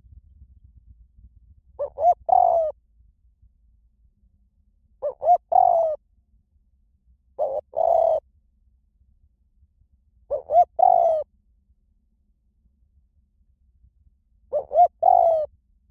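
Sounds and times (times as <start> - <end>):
dove cooing: 1.8 - 2.8, 5.0 - 6.0, 7.4 - 8.2, 10.3 - 11.3, 14.5 - 15.5.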